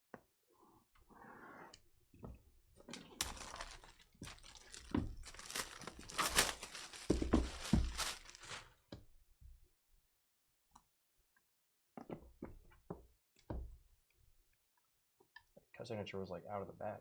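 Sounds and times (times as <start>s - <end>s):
packaging crinkling and tearing: 3.2s - 8.7s.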